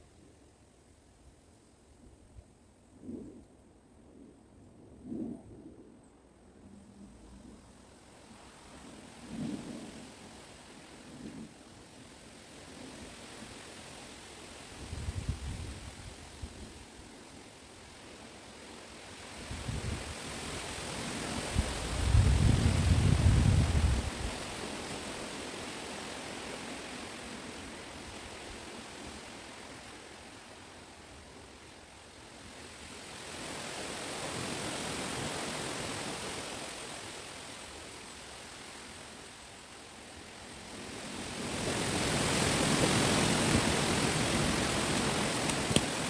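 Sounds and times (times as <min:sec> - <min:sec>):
wind through branches and leaves: 0:00.0 - 0:46.0
wind gust buffeting microphone: 0:19.5 - 0:24.8, 0:41.8 - 0:46.0.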